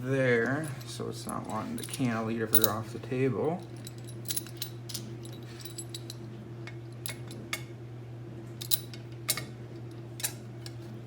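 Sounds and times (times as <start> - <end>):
steady low hum: 0.0 - 11.0
small metal tools clinking: 0.4 - 2.9, 3.5 - 6.2.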